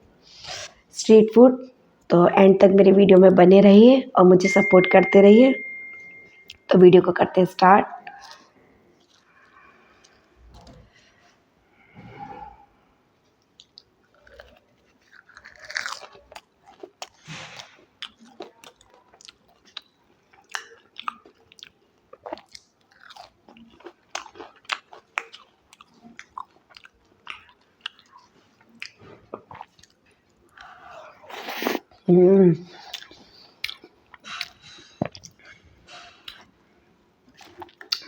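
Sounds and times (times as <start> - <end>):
person chewing crunchy food: 8.1 - 10.3, 13.4 - 32.1, 32.8 - 36.6, 37.3 - 38.0.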